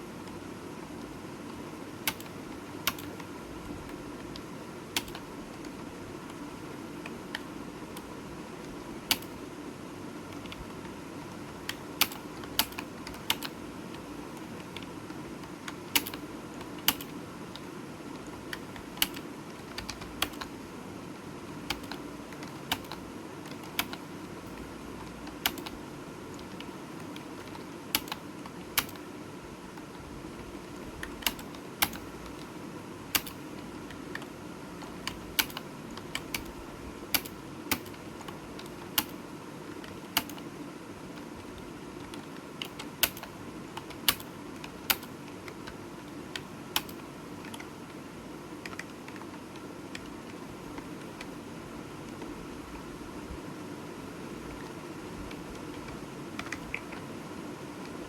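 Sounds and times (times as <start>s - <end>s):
steady background hum: 0.0s - 58.0s
keyboard keys clicking: 2.0s - 3.3s, 3.9s - 6.4s, 9.1s - 9.4s, 10.3s - 20.6s, 21.6s - 29.1s, 31.0s - 40.5s, 41.1s - 48.0s, 48.6s - 51.4s, 54.6s - 57.1s.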